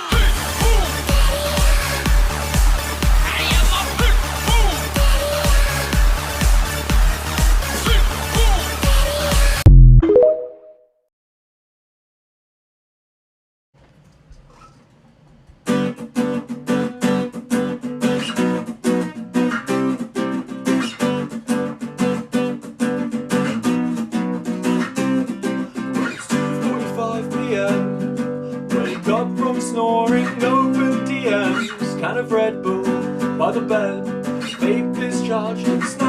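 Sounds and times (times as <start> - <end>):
acoustic guitar strumming: 15.7 - 36.0.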